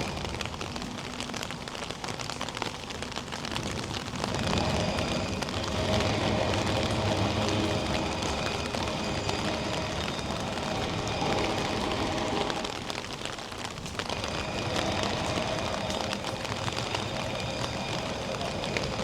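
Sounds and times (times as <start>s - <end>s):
rain pattering on hard surface: 0.0s - 19.0s.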